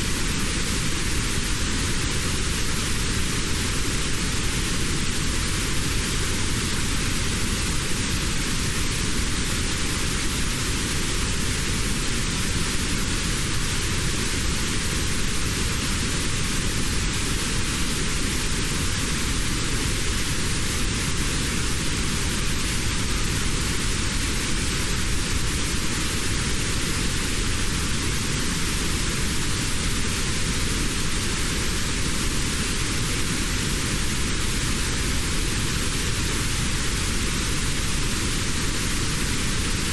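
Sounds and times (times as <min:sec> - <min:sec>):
notched white noise hiss: 0:00.0 - 0:39.9.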